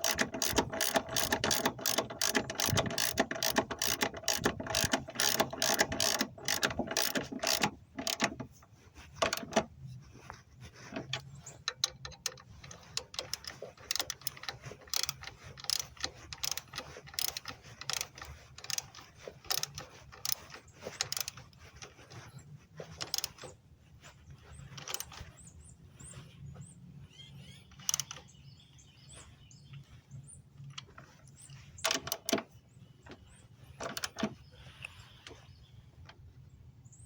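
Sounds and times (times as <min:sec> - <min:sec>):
sharp clicks: 0:00.0 - 0:08.5, 0:11.0 - 0:22.3, 0:22.9 - 0:23.5, 0:24.6 - 0:25.3, 0:27.4 - 0:28.3, 0:30.6 - 0:35.4
socket ratchet clicking: 0:00.0 - 0:08.5, 0:09.2 - 0:09.7, 0:11.1 - 0:21.7, 0:22.9 - 0:23.4, 0:24.8 - 0:25.2, 0:27.8 - 0:28.2, 0:31.8 - 0:32.5, 0:33.8 - 0:34.4
faint bird chirps: 0:24.2 - 0:31.9.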